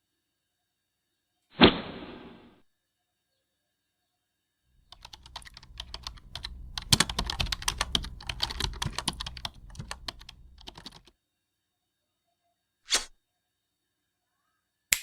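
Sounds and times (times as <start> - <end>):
keyboard key clicks: 4.9 - 11.1.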